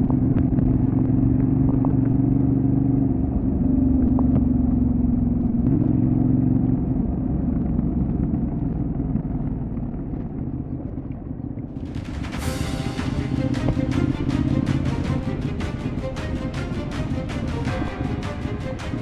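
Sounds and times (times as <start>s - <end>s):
motorcycle engine running: 0.0s - 10.6s
music: 11.8s - 19.0s.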